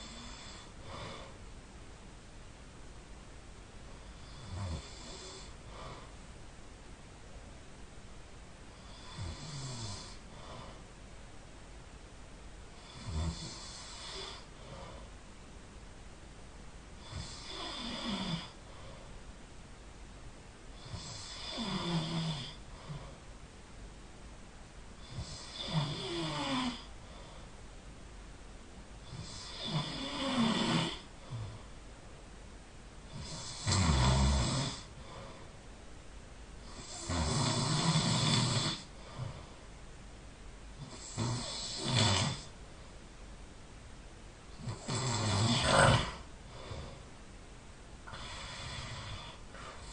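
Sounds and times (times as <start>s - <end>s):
person snoring: 0.0s - 1.4s, 4.0s - 6.1s, 8.8s - 10.8s, 12.8s - 15.1s, 17.0s - 19.0s, 20.8s - 23.2s, 25.0s - 26.9s, 29.0s - 31.7s, 33.1s - 35.4s, 36.6s - 39.5s, 40.8s - 42.5s, 44.5s - 47.1s, 48.1s - 49.9s.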